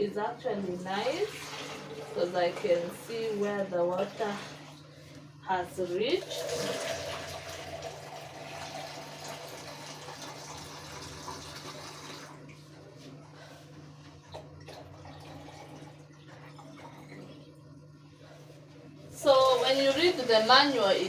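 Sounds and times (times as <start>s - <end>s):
water pouring into reservoir: 6.2s - 12.5s, 14.4s - 17.3s.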